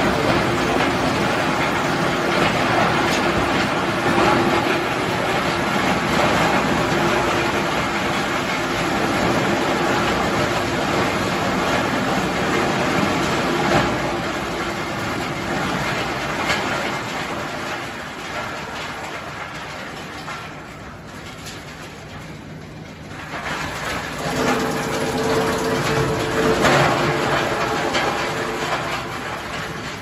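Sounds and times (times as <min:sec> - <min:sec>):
wood chipper rumbling and rattling: 0:00.0 - 0:30.0.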